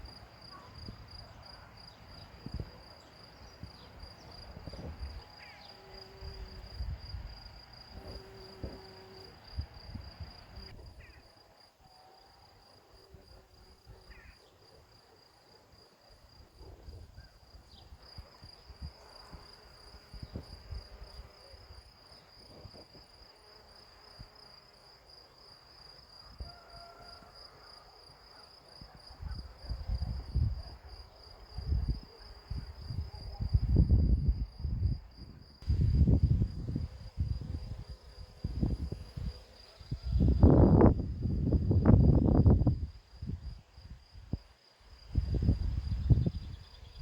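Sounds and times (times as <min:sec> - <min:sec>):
cricket trilling: 0:00.0 - 0:15.3.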